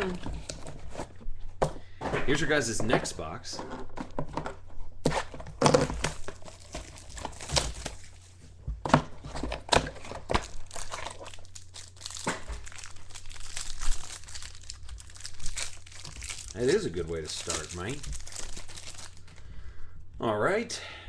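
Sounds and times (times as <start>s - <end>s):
shrink-wrap and cardboard tearing: 5.0s - 8.2s, 9.2s - 19.4s.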